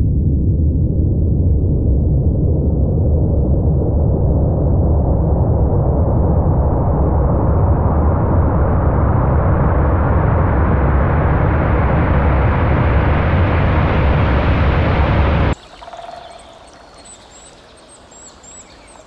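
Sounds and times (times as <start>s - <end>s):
heavy rushing water: 15.5s - 19.0s.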